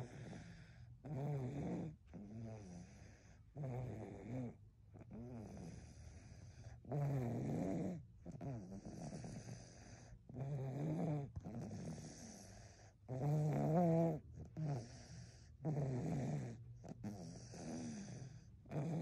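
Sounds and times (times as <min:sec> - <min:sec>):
baby snoring: 0:00.0 - 0:03.0, 0:06.9 - 0:12.5, 0:13.1 - 0:19.0.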